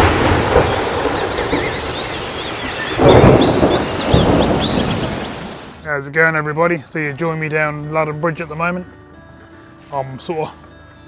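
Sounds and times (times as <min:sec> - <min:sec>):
deep gusty rumbling: 0:00.0 - 0:05.8
small birds chirping: 0:00.6 - 0:05.9.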